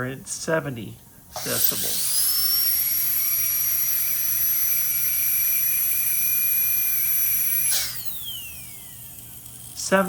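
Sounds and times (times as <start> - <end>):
dental drill whine: 1.3 - 10.0
air hissing: 7.3 - 8.2.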